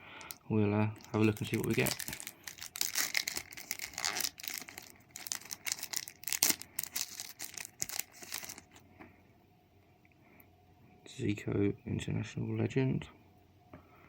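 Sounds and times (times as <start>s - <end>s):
wrapper tearing and crinkling: 1.0s - 8.8s.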